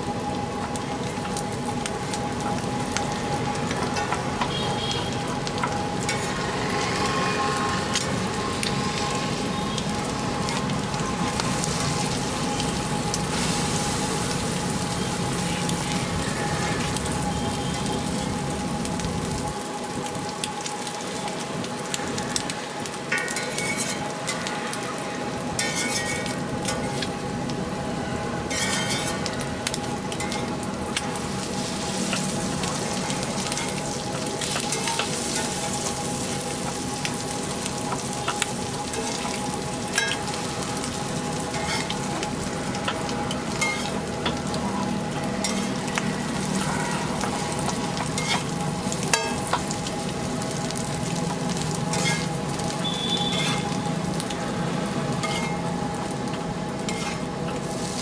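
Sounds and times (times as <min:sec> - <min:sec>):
egg sizzling in oil: 0:00.0 - 0:58.0
metal spatula scraping pan: 0:25.6 - 0:26.4, 0:28.5 - 0:29.3, 0:51.9 - 0:52.3, 0:53.3 - 0:53.8, 0:55.2 - 0:55.6, 0:56.9 - 0:57.2.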